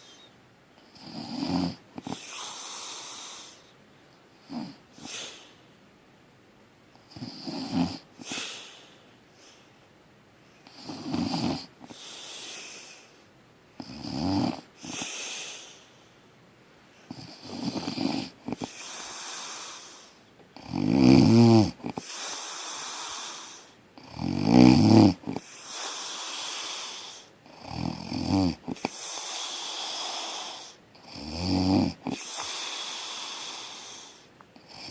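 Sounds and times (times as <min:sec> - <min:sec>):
breathy hiss: 0:00.0 - 0:05.7, 0:07.0 - 0:13.3, 0:14.5 - 0:20.3, 0:21.7 - 0:24.2, 0:25.1 - 0:27.8, 0:28.6 - 0:34.9
person snoring loudly: 0:01.0 - 0:03.6, 0:07.2 - 0:08.0, 0:10.7 - 0:11.7, 0:13.8 - 0:15.0, 0:17.1 - 0:19.9, 0:20.6 - 0:34.9.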